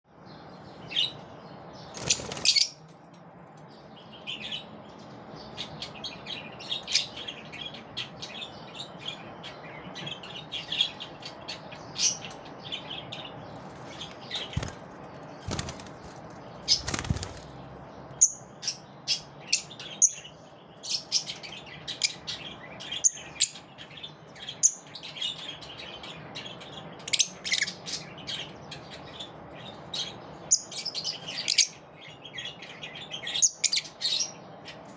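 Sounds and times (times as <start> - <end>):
lovebirds chirping: 0.2 - 2.9, 3.6 - 34.9
wing flapping: 1.9 - 2.6, 13.6 - 17.7.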